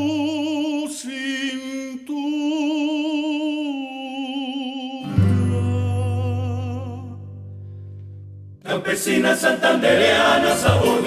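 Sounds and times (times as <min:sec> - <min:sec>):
person singing with vibrato: 0:08.7 - 0:11.0.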